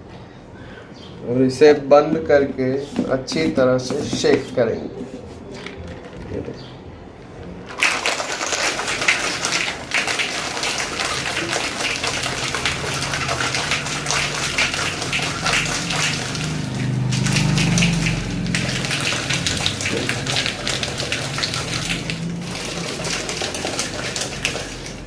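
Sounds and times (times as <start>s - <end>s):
ice rattling in a shaker: 7.7s - 25.0s.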